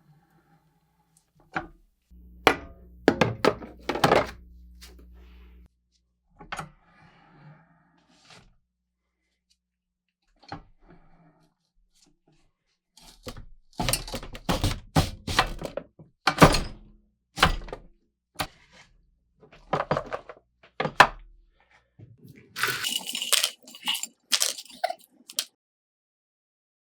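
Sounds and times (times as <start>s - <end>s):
rough scraping: 22.5s - 25.5s.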